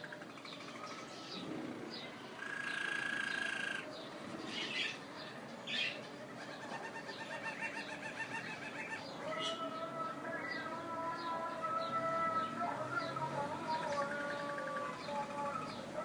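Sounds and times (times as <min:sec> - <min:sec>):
canary chirps: 0:00.0 - 0:05.0, 0:05.6 - 0:09.7
canary trilling: 0:02.4 - 0:03.9, 0:05.7 - 0:09.6.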